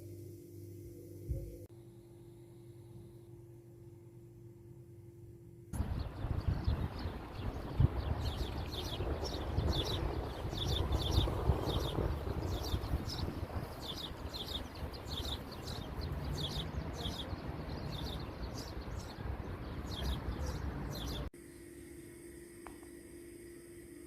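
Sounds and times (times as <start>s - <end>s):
small birds chirping: 5.8s - 21.3s.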